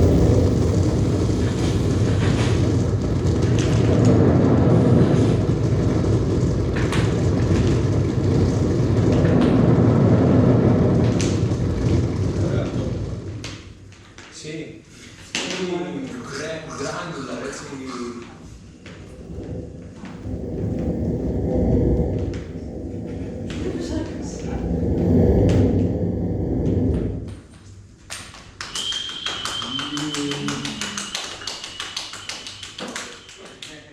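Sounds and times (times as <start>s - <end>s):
hissy electronic flares: 0.0s - 13.8s, 16.1s - 27.5s
low rumbling electronic noise drone: 0.0s - 33.6s
people clapping: 0.1s - 14.4s, 27.2s - 33.9s.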